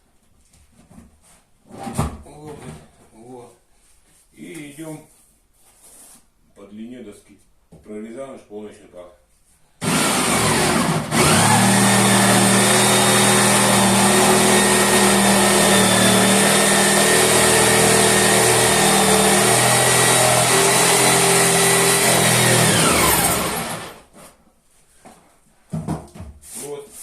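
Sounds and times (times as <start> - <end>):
jigsaw sawing wood: 9.8 - 24.1.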